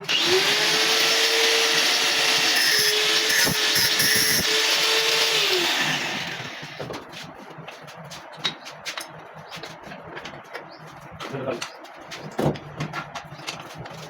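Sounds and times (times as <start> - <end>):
electric power tool running: 0.0 - 6.9.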